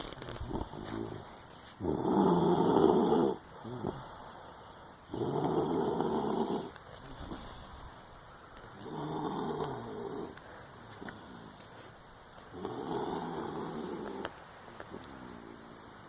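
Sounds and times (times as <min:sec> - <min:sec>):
quiet breathing: 0:00.1 - 0:16.0
person snoring: 0:00.4 - 0:04.4, 0:05.0 - 0:07.5, 0:08.8 - 0:10.4, 0:12.5 - 0:14.3.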